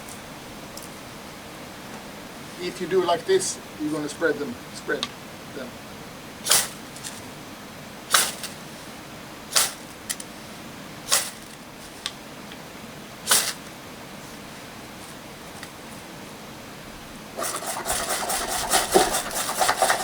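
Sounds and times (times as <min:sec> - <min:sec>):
striker rasping on fire rod: 0:08.1 - 0:08.6, 0:09.5 - 0:10.3, 0:17.4 - 0:20.0.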